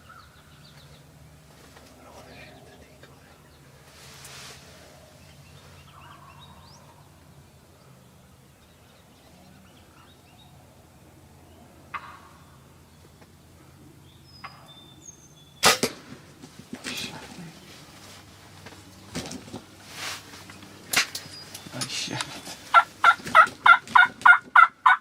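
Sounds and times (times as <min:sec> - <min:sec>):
bow shot crack: 0:15.6 - 0:16.2.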